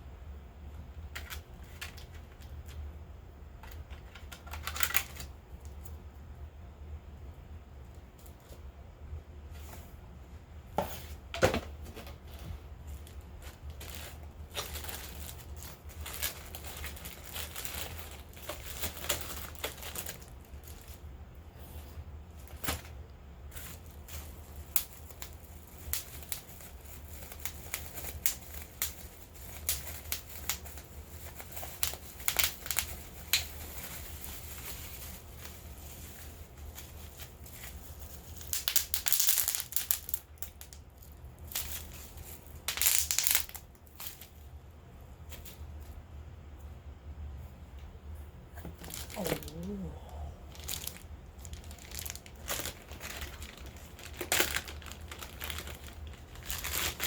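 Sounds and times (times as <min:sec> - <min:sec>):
steady low hum: 0:00.0 - 0:39.0, 0:39.6 - 0:57.0
packaging crinkling and rustling: 0:01.0 - 0:02.8, 0:03.6 - 0:06.0, 0:10.8 - 0:21.1, 0:21.9 - 0:44.5, 0:48.6 - 0:49.9, 0:50.5 - 0:57.0.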